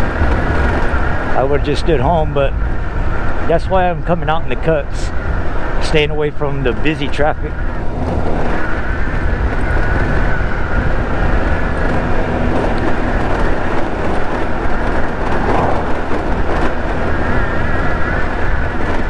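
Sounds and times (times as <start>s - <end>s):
road rumble: 0.0s - 19.0s
thin steady whine: 0.0s - 19.0s
scooter engine running: 7.4s - 19.0s.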